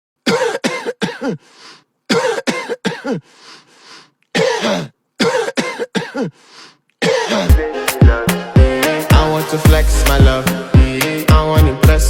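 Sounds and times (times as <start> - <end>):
person coughing: 0.2 - 1.5, 2.1 - 3.3, 4.3 - 7.6
person breathing: 1.4 - 1.9, 3.2 - 4.3, 6.3 - 8.5.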